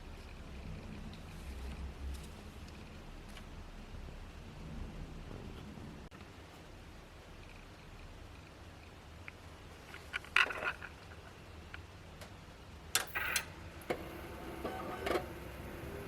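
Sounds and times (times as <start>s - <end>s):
clatter of small hard parts: 9.9s - 11.3s.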